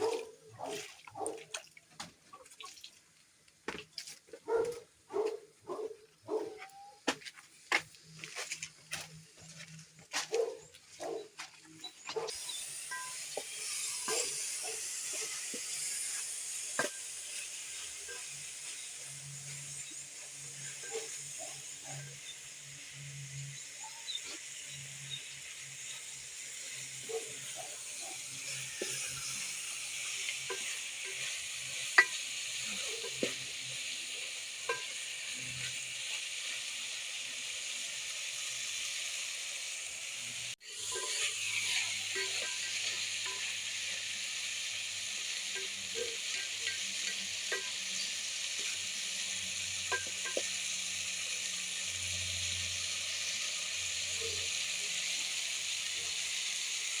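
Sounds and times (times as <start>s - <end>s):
food sizzling in a pan: 11.1s - 57.0s
utensil stirring and scraping: 11.9s - 22.4s, 27.2s - 36.6s, 40.6s - 51.5s.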